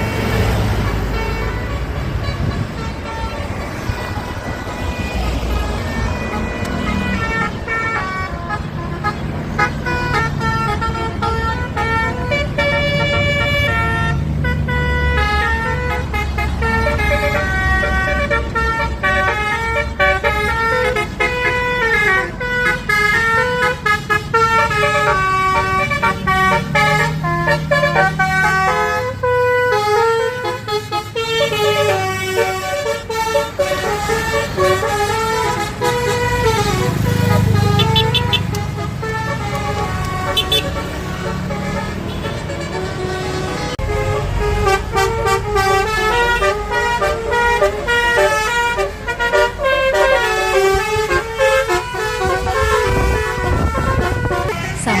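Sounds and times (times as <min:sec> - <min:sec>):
bus engine rumble: 0:00.0 - 0:55.0
musical bus horn tune: 0:00.0 - 0:55.0.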